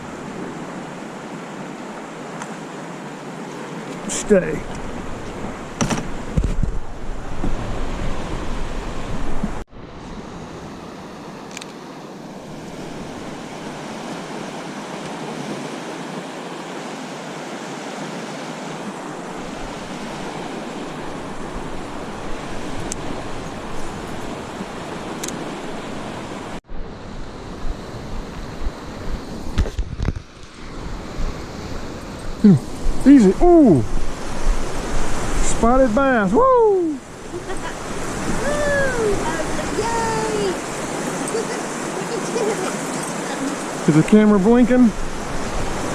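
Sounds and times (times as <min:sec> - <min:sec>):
river water rushing: 0:00.0 - 0:29.6, 0:30.3 - 0:45.9
wind on microphone: 0:04.6 - 0:11.1, 0:19.1 - 0:43.9, 0:44.9 - 0:45.9.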